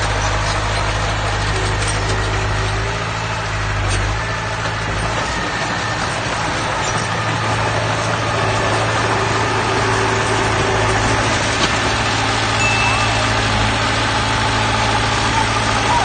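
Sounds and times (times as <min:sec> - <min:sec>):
diesel engine running: 0:00.0 - 0:16.0
brief high tone: 0:12.6 - 0:14.0.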